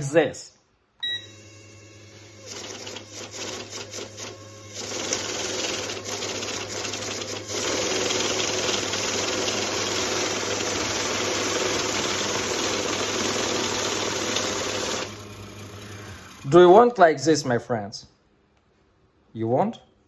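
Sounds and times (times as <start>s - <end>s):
banknote counting machine whirring: 1.4s - 16.8s.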